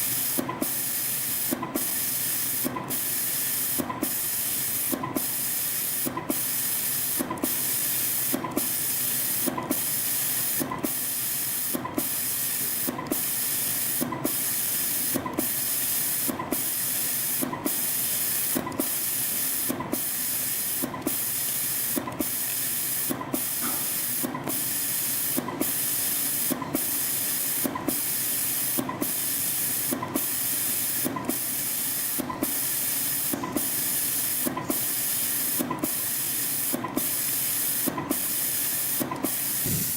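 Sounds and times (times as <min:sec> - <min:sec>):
spring coiling machine hissing: 0:31.3 - 0:39.9.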